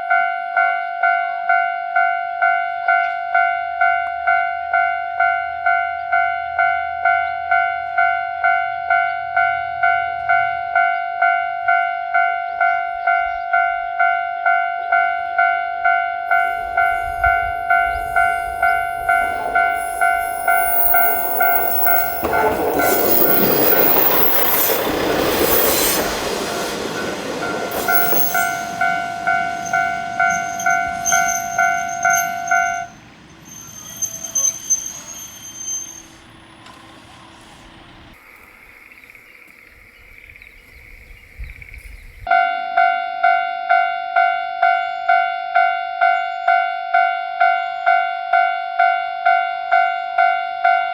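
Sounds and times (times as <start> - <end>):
level-crossing warning bell dinging: 0.0 - 37.4, 42.3 - 50.9
diesel train rumbling past: 1.4 - 39.0.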